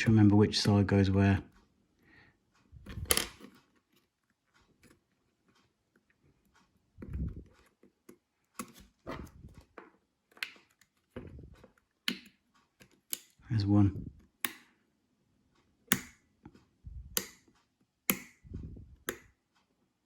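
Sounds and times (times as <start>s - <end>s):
plastic clicks and scrapes: 6.4s - 13.4s.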